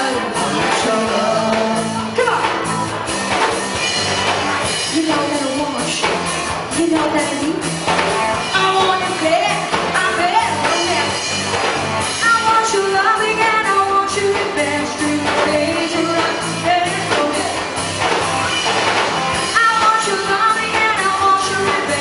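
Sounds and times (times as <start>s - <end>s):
person singing: 0.0s - 2.6s
pop rock band playing: 0.0s - 22.0s.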